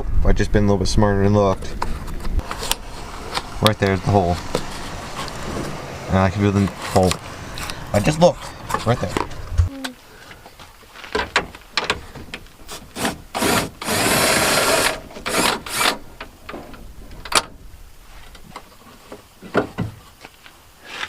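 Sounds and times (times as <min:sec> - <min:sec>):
tool handling clicks and knocks: 0:11.0 - 0:12.8
power drill running: 0:13.4 - 0:15.9.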